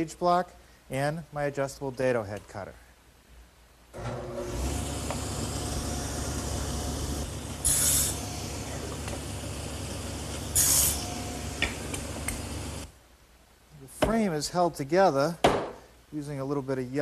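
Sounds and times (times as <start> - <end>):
table saw running: 4.0 - 12.9
saw blade cutting into wood: 10.5 - 12.5.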